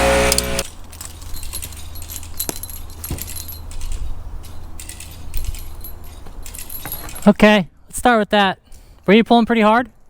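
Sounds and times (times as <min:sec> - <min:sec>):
metal hardware jingling: 0:00.2 - 0:07.5.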